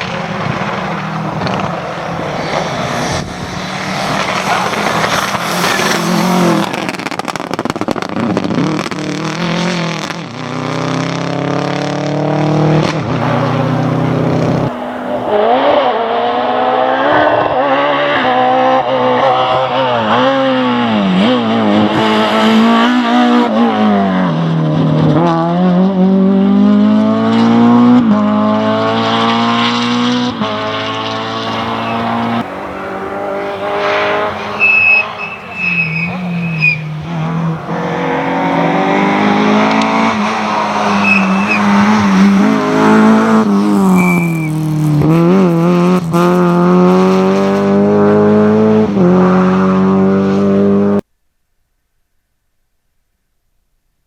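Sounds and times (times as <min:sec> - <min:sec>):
rally car engine revving: 0:00.0 - 0:51.0
tyre squeals: 0:27.2 - 0:44.8.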